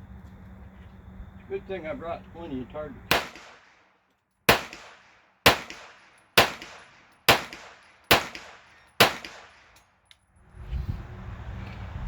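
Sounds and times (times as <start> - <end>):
gunshots with echo: 3.1 - 3.7, 4.5 - 9.7.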